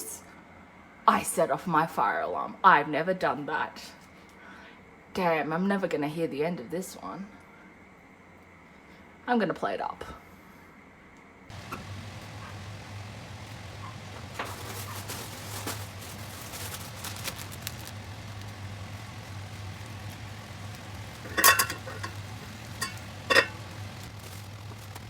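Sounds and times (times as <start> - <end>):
steady low hum: 6.4 - 25.0
light sizzling and scraping: 11.5 - 25.0
utensil clinking on cookware: 21.2 - 23.8.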